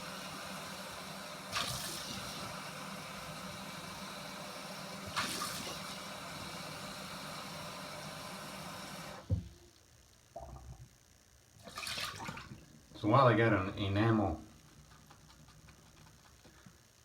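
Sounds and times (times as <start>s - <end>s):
water running from a tap: 0.0s - 9.2s.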